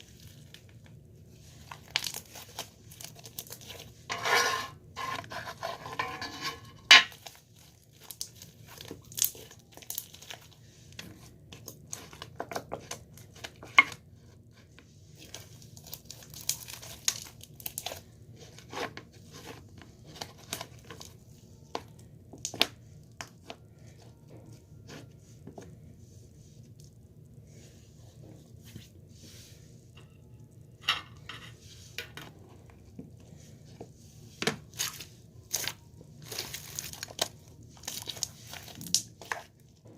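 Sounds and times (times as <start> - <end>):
crinkling handling noises: 0.0 - 39.9.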